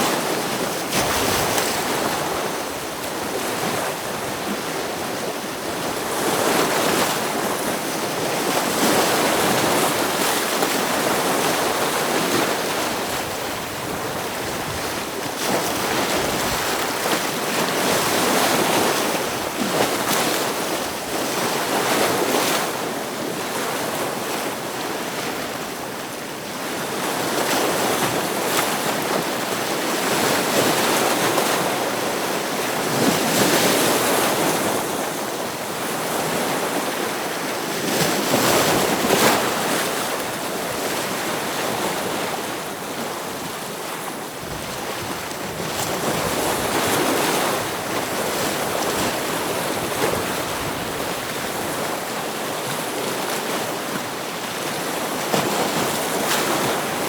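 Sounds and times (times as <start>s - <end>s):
wind: 0.0s - 57.0s
waves breaking against rocks: 0.1s - 22.8s, 37.8s - 57.0s.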